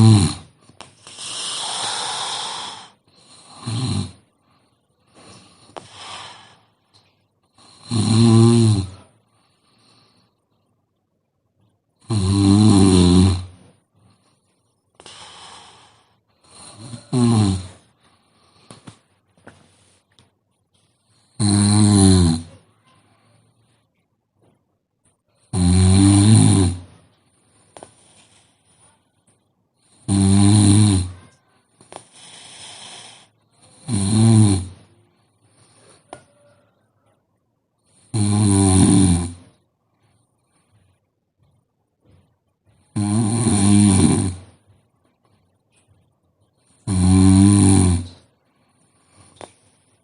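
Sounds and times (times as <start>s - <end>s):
woman snoring: 0.0s - 4.4s, 5.1s - 6.8s, 7.5s - 9.2s, 12.0s - 13.6s, 15.0s - 18.0s, 21.2s - 22.7s, 25.5s - 27.0s, 29.8s - 34.9s, 37.9s - 39.5s, 42.9s - 44.6s, 46.8s - 48.2s
quiet breath: 0.0s - 7.9s, 8.9s - 12.0s, 13.5s - 21.4s, 22.4s - 25.5s, 26.8s - 30.1s, 31.1s - 33.9s, 34.7s - 38.1s, 39.6s - 43.0s, 48.0s - 50.0s.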